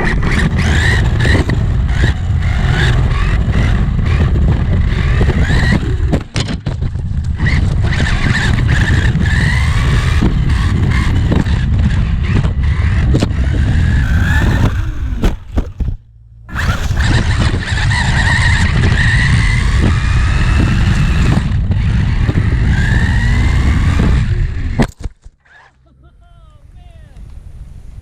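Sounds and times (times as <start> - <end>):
chassis and tyres rumbling: 9.4 - 24.5
electric motor whining: 13.8 - 17.7.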